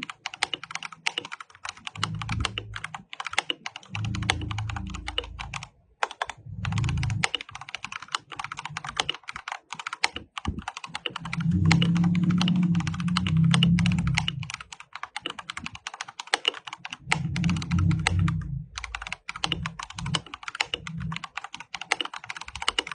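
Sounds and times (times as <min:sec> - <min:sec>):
mechanical keyboard typing: 0:00.0 - 0:22.9
low hum: 0:02.0 - 0:03.0, 0:03.9 - 0:07.3, 0:10.5 - 0:14.6, 0:17.0 - 0:21.2.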